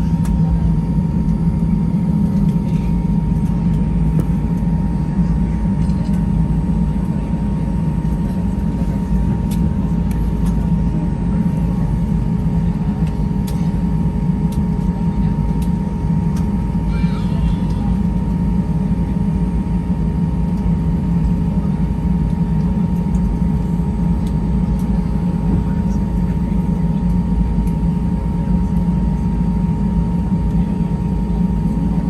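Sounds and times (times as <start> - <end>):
aircraft cabin rumble: 0.0 - 32.0
steady hum: 0.0 - 32.0.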